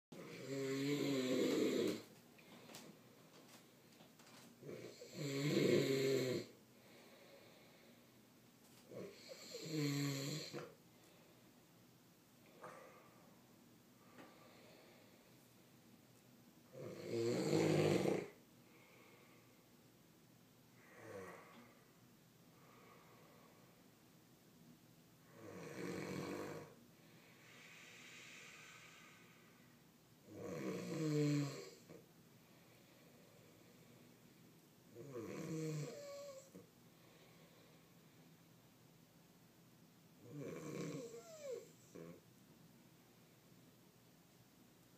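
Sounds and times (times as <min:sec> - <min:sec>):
quiet breathing: 0:00.1 - 0:24.3, 0:25.2 - 0:39.1, 0:40.2 - 0:44.0
man snoring: 0:00.2 - 0:02.1, 0:04.6 - 0:06.6, 0:08.9 - 0:10.7, 0:16.7 - 0:18.4, 0:25.3 - 0:26.8, 0:30.3 - 0:32.0, 0:35.0 - 0:36.6, 0:40.2 - 0:42.2.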